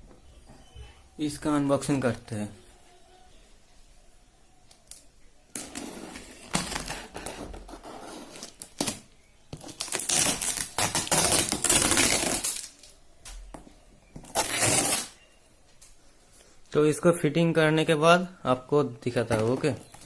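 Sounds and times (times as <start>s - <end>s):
packaging rustling and scraping: 5.6s - 13.0s.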